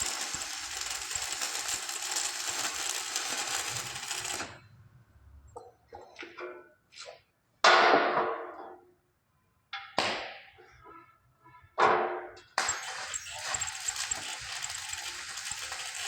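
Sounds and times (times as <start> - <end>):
arc welding crackling: 0.0 - 4.6, 12.6 - 16.0.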